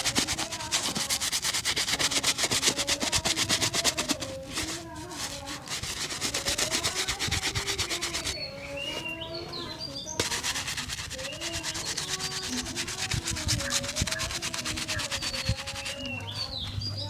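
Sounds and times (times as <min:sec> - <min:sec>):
brush strokes on leather shoe: 0:00.0 - 0:08.4, 0:10.2 - 0:16.3.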